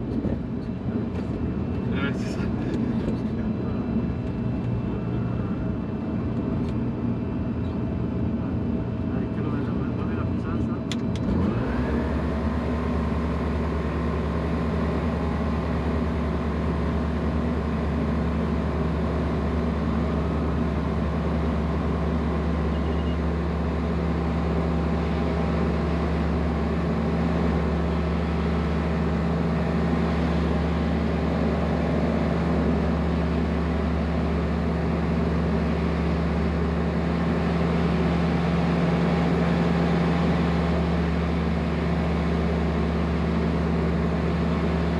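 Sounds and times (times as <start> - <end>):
aircraft engine and propeller drone: 0.0 - 44.9.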